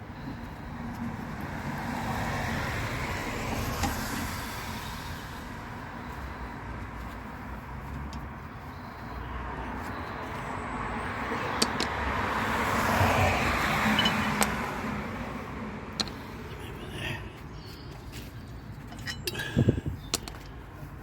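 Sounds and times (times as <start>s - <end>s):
car passing: 0.0s - 17.5s.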